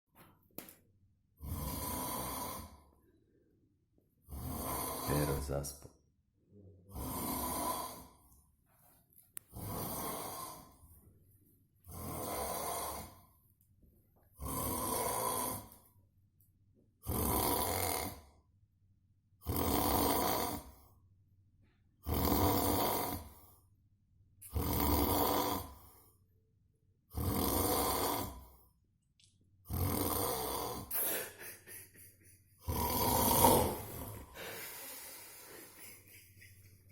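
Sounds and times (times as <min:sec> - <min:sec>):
person snoring: 0:01.4 - 0:03.0, 0:04.3 - 0:05.6, 0:06.9 - 0:08.2, 0:09.5 - 0:10.8, 0:11.9 - 0:13.2, 0:14.4 - 0:15.7, 0:17.0 - 0:18.3, 0:19.4 - 0:20.8, 0:22.0 - 0:23.4, 0:24.5 - 0:26.1, 0:27.1 - 0:28.5, 0:29.7 - 0:36.1.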